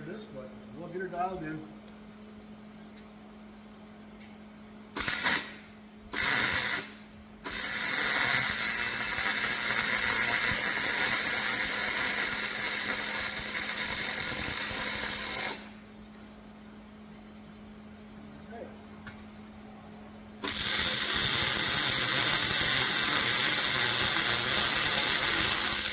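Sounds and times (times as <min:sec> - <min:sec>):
arc welding crackle: 0:05.0 - 0:15.9, 0:20.4 - 0:25.9.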